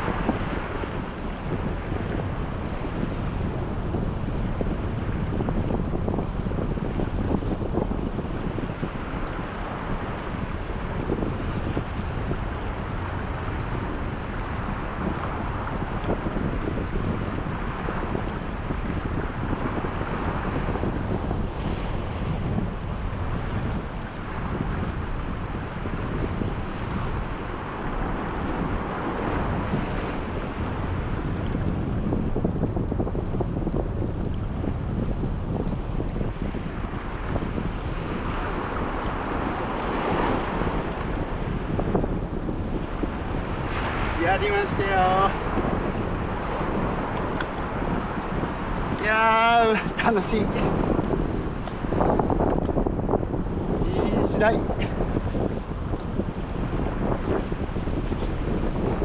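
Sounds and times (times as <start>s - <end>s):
surf washing: 0.0s - 59.0s
wind buffeting microphone: 0.0s - 59.0s.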